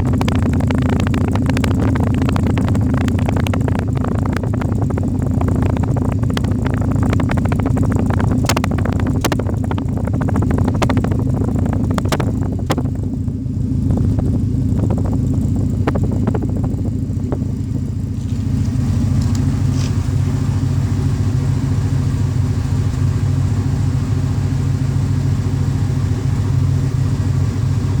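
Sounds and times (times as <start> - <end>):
sharp ticks: 0.0 - 20.0
car exhaust running steadily: 0.0 - 28.0.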